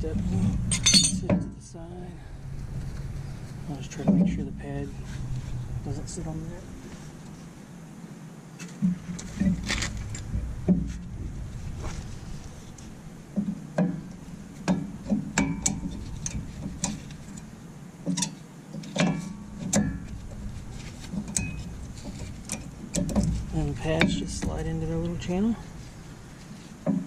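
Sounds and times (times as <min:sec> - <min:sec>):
metallic clicks and clinks: 0:00.7 - 0:01.4.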